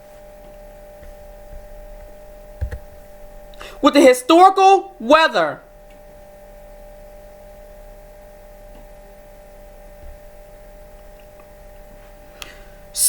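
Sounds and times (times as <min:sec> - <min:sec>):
low electrical hum: 0:00.0 - 0:13.0.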